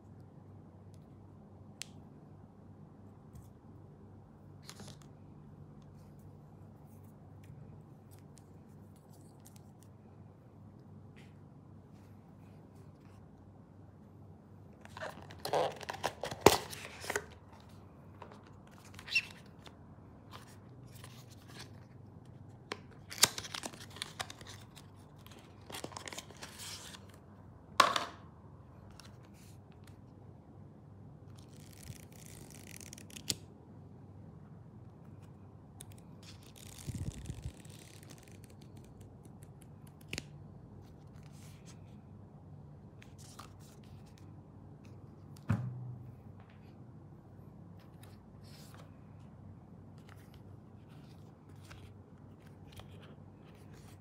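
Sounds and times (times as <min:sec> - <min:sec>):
packaging tearing and rustling: 0:14.9 - 0:17.4.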